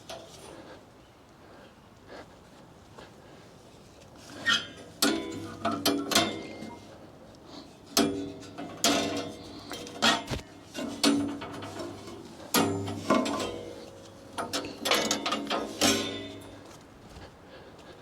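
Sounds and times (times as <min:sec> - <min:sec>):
metal clanks and scrapes: 0:07.7 - 0:16.6.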